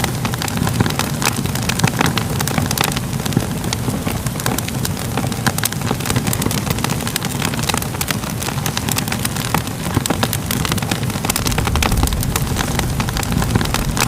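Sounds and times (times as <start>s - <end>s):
fire crackling and popping: 0.0s - 14.0s
low rumble: 11.2s - 14.0s.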